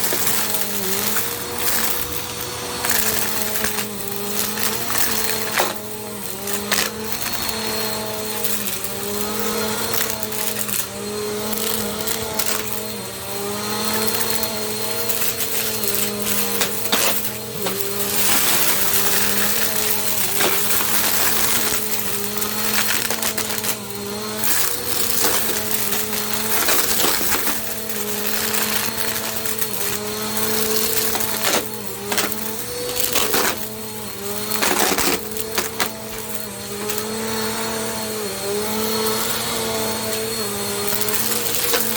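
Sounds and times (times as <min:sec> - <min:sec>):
vacuum cleaner running: 0:00.0 - 0:41.9
clicks and rattles on floor: 0:15.2 - 0:33.7.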